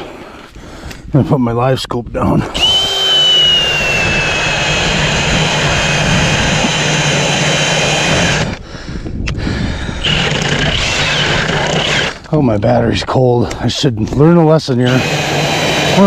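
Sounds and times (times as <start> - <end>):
ice auger motor whine: 2.6 - 8.6, 10.0 - 12.2, 14.9 - 16.0.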